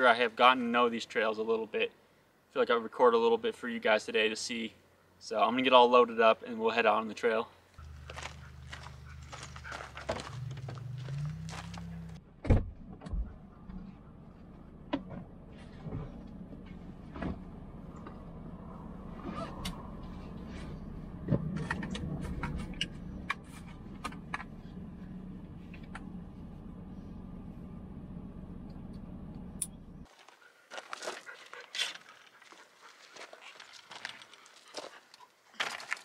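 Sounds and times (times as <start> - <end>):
vehicle engine running: 7.8 - 12.3, 13.3 - 30.1.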